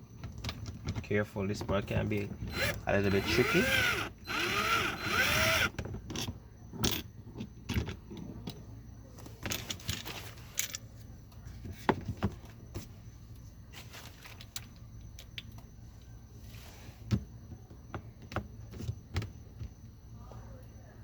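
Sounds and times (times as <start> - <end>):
ratcheting: 2.5 - 5.7.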